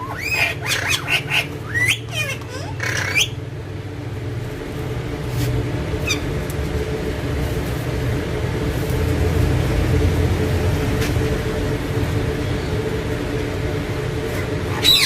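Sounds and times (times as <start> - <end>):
parakeet chirp: 0.0 - 3.4, 6.0 - 6.3, 14.7 - 15.0
low mechanical hum: 0.0 - 15.0.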